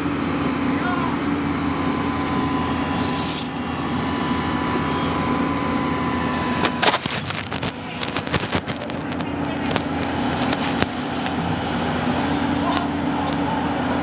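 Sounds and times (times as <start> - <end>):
machine engine running: 0.0 - 14.0
short hiss: 2.7 - 3.6.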